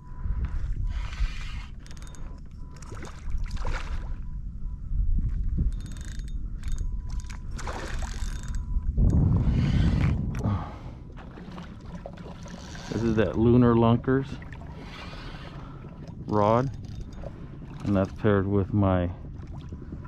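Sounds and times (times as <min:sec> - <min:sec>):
steady low rumble: 0:00.0 - 0:20.0
fishing reel clicking and rubbing: 0:00.9 - 0:03.0, 0:05.7 - 0:10.2, 0:12.5 - 0:13.2, 0:14.8 - 0:15.7.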